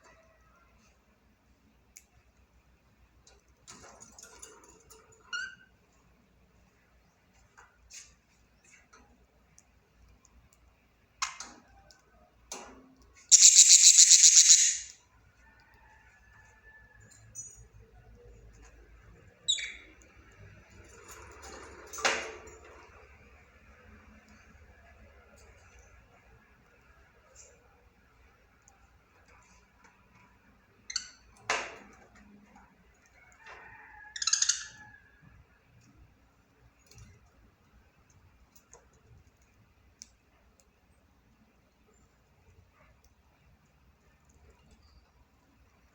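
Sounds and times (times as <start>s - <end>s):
budgerigar clicking: 13.3s - 14.9s
budgerigar harsh rattling call: 13.3s - 14.9s
budgerigar short sharp calls: 13.3s - 14.9s.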